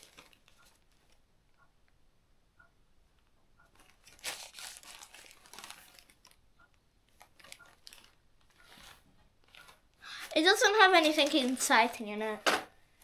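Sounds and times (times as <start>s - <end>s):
plastic bag crinkling: 0.0s - 1.1s, 3.8s - 6.4s, 7.1s - 12.2s.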